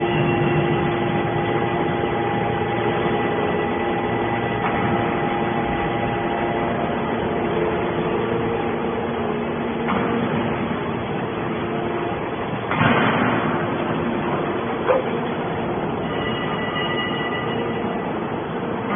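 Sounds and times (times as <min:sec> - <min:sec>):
baler motor and pump hum: 0:00.0 - 0:18.9
constant noisy rush: 0:00.0 - 0:18.9
steady whining tones: 0:00.0 - 0:18.9.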